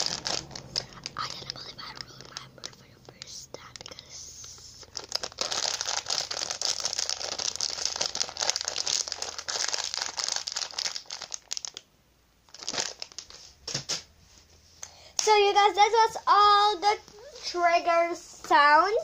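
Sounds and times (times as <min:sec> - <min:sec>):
crinkling and crackling: 0:00.0 - 0:11.9, 0:12.5 - 0:14.6.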